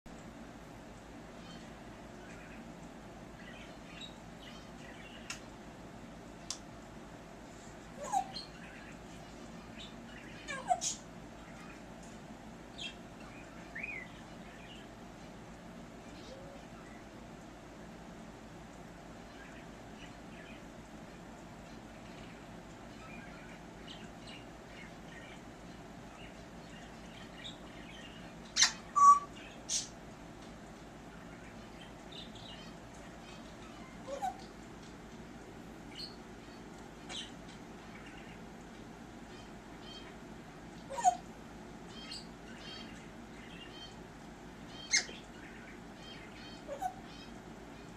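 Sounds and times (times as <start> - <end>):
parrot chirps and clicks: 1.0 - 5.6, 6.4 - 6.9.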